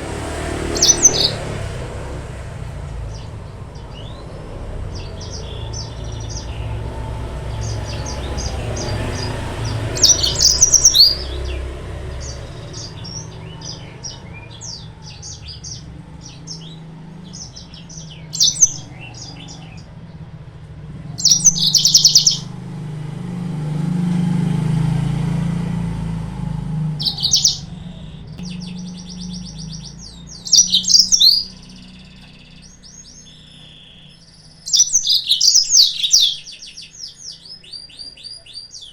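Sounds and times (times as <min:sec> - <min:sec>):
canary chirps and trills: 0:00.0 - 0:22.8, 0:26.6 - 0:38.9
rapid bird twittering: 0:00.3 - 0:01.9, 0:03.0 - 0:20.3, 0:21.0 - 0:22.6, 0:26.8 - 0:38.9
low rumble: 0:25.4 - 0:33.3.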